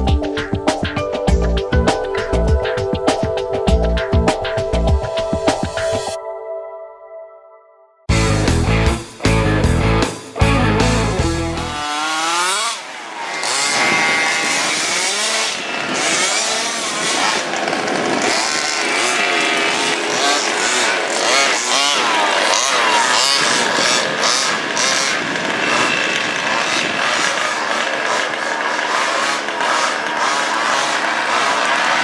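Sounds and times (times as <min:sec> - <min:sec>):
small engines revving: 0:08.1 - 0:32.0.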